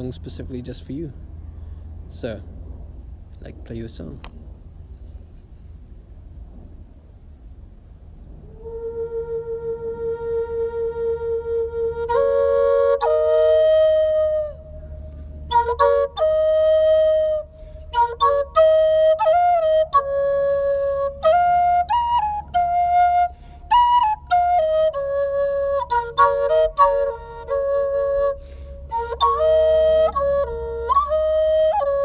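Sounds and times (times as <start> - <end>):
solo flute melody: 8.3 - 32.0.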